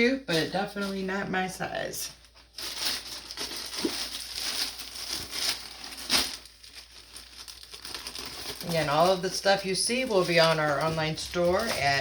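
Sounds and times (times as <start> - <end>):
plastic bag crinkling: 2.2 - 12.0.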